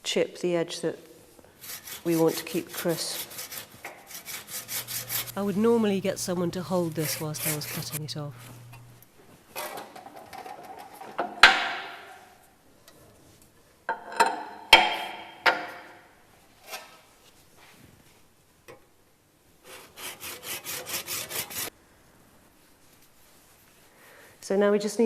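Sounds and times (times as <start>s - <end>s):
handsaw cutting plaster: 1.6s - 8.3s, 19.7s - 21.7s.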